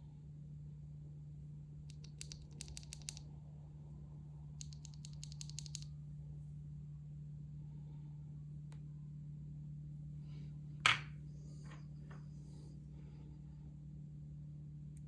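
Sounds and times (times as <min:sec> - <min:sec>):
steady low hum: 0:00.0 - 0:15.0
mechanical keyboard keystrokes: 0:01.9 - 0:03.2, 0:04.6 - 0:05.8.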